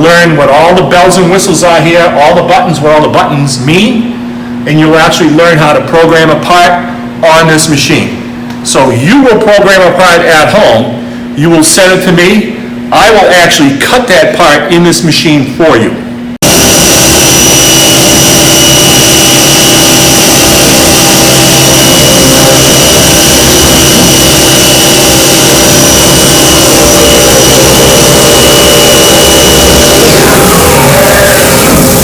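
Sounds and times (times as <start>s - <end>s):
high-pitched spindle whine: 16.4s - 32.0s
milling machine cutting: 16.4s - 32.0s.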